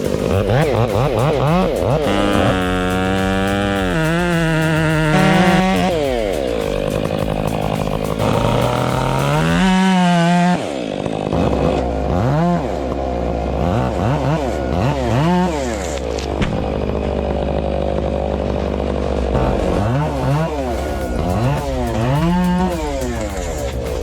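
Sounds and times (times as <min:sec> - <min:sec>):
chainsaw engine revving: 0:00.0 - 0:24.0.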